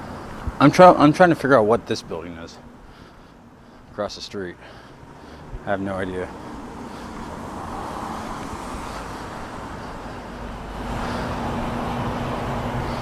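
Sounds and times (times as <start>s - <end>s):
engine hum: 0.0s - 13.0s
tyre hiss on wet road: 6.6s - 9.8s.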